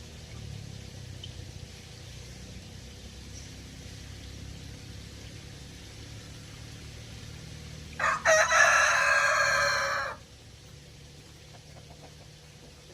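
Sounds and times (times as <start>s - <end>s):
rooster crowing: 8.0s - 10.2s.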